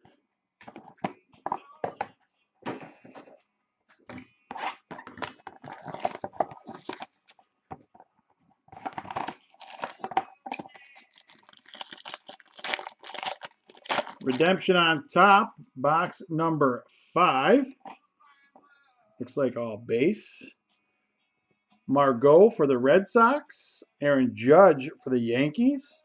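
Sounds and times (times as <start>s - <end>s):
packaging tearing and rustling: 5.2s - 7.4s, 8.8s - 10.1s, 11.0s - 14.5s.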